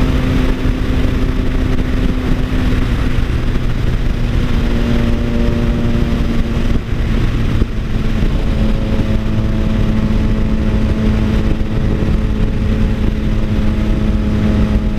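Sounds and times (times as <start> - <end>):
motorcycle exhaust drone: 0.0 - 14.9.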